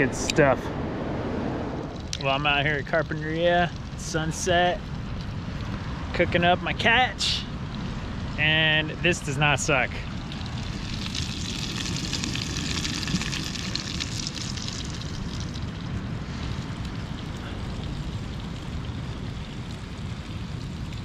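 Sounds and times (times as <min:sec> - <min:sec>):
wind and surf rumble: 0:00.0 - 0:21.0
fish sizzling in butter: 0:10.2 - 0:15.7.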